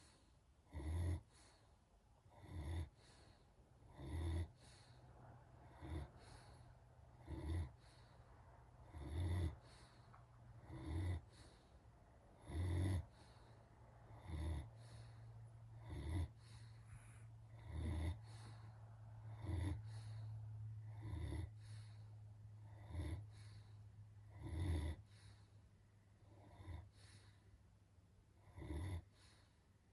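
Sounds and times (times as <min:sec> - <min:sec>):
dog snoring: 0:00.0 - 0:05.0, 0:05.6 - 0:08.2, 0:08.8 - 0:11.7, 0:12.4 - 0:25.6, 0:26.2 - 0:27.4, 0:28.4 - 0:29.6.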